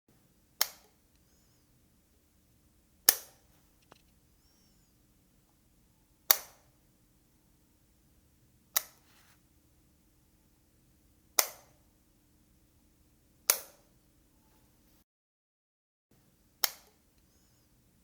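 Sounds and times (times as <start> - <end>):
faint steady hum: 0.1 - 15.0, 16.1 - 18.0
light switch clicking: 11.4 - 11.6, 16.6 - 16.9.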